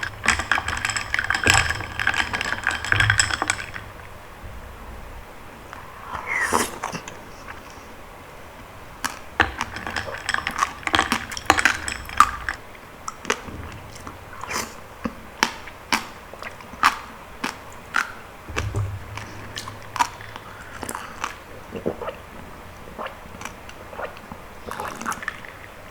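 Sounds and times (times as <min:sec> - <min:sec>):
wet sticky chewing: 0:15.5 - 0:18.3, 0:19.3 - 0:25.7.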